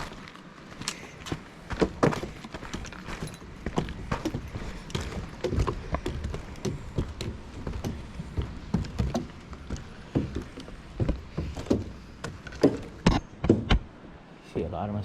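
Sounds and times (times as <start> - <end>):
crunching footsteps on trail: 0.0 - 13.0
knocks of carried gear: 0.0 - 13.9.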